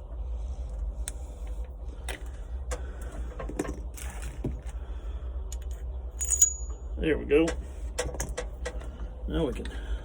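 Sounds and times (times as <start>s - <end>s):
metal parts clicking: 5.5s - 6.8s.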